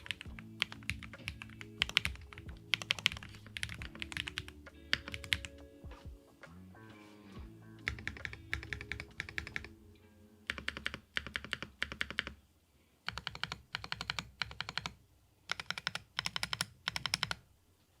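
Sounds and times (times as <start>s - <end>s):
typing on mechanical keyboard: 0.0s - 5.6s, 7.8s - 9.8s, 10.5s - 12.4s, 13.1s - 17.5s.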